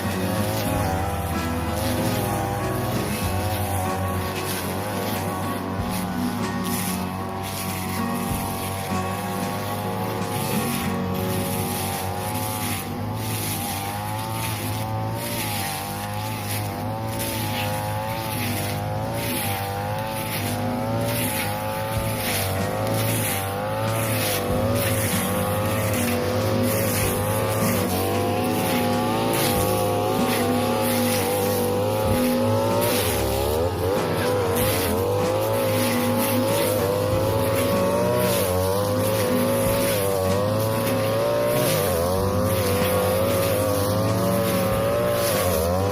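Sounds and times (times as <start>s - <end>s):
brush cutter engine running: 0.0s - 45.9s.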